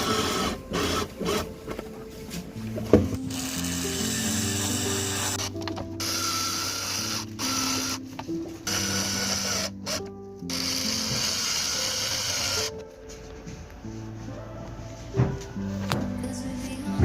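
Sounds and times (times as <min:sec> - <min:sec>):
background music: 0:00.0 - 0:17.0
small motor running: 0:03.3 - 0:08.0, 0:08.7 - 0:12.6.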